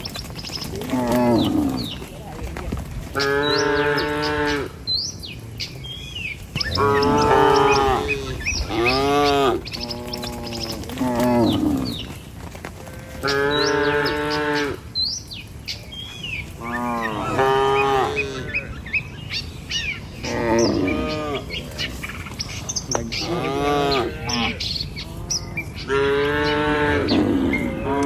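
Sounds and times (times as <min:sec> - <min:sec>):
small birds chirping: 0:00.0 - 0:28.0
cattle mooing: 0:00.7 - 0:04.8, 0:05.6 - 0:12.0, 0:12.9 - 0:14.8, 0:16.6 - 0:18.7, 0:22.9 - 0:28.0.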